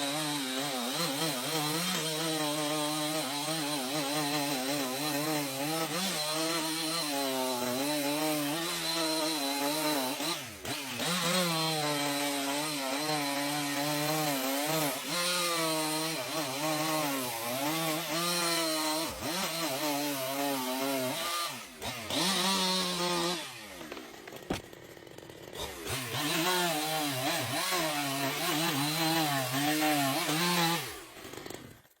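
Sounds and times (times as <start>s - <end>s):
chainsaw cutting through tree: 0.0s - 32.0s.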